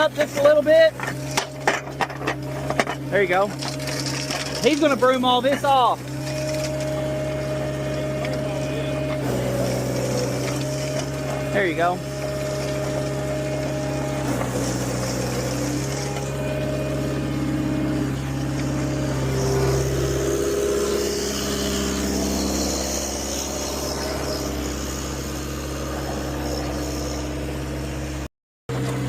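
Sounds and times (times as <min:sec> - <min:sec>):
heavy machinery engine running: 0:00.0 - 0:29.0.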